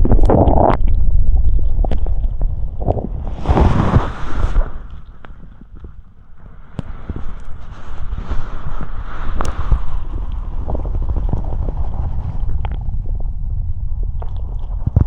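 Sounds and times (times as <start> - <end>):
stomach gurgling: 0.0 - 15.0
short rushing hiss: 3.2 - 5.5.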